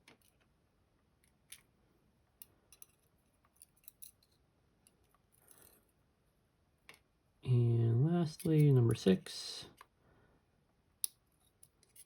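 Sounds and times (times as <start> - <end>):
light metallic clicks of lock parts: 2.4 - 5.8, 11.0 - 12.0.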